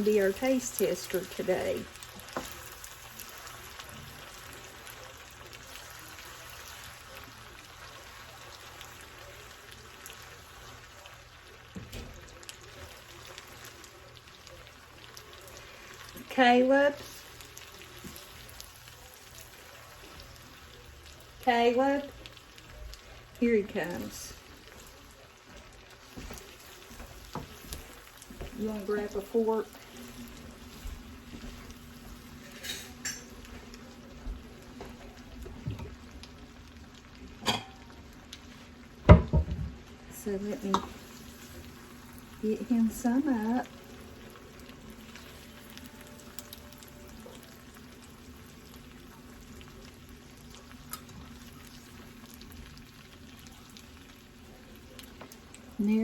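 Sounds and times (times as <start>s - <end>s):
sauce bubbling and sizzling in a pan: 0.0s - 56.0s
utensil clinking and scraping a pan: 32.3s - 33.5s.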